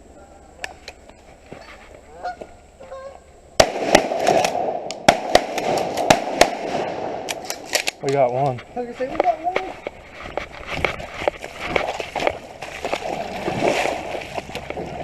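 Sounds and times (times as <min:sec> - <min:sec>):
geese honking: 0:01.5 - 0:03.4
shotgun shots: 0:03.6 - 0:07.9.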